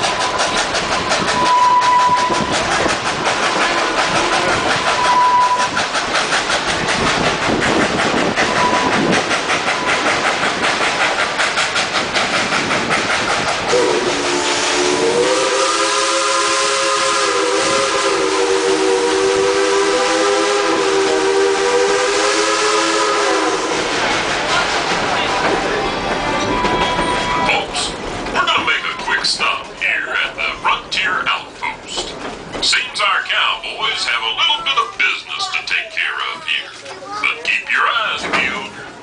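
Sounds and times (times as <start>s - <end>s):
train wheels clacking: 0.0s - 38.9s
locomotive whistle chord: 1.4s - 2.4s, 13.7s - 23.7s.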